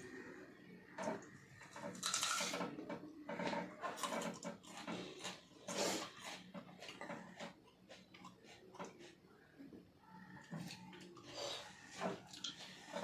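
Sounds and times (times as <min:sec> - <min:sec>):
person chewing and smacking: 0:03.9 - 0:09.3, 0:10.5 - 0:13.0.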